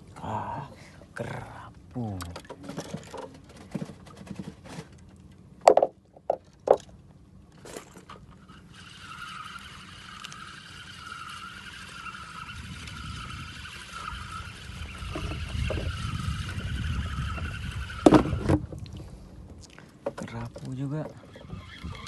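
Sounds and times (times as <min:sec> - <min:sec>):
boat motor droning: 0:05.0 - 0:19.3
sharp knocks: 0:05.6 - 0:06.8.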